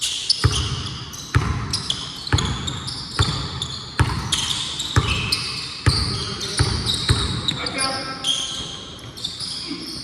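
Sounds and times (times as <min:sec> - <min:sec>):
sneakers squeaking on floor: 0:00.0 - 0:10.0
basketball bouncing on hardwood: 0:00.4 - 0:04.4.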